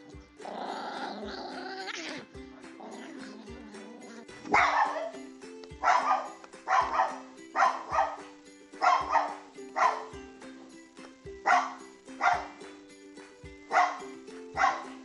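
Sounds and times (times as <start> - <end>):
music with steady beat: 0.0 - 0.6, 2.2 - 15.0
dog barking: 4.5 - 5.2, 5.8 - 8.2, 8.8 - 10.2, 11.4 - 12.6, 13.7 - 15.0.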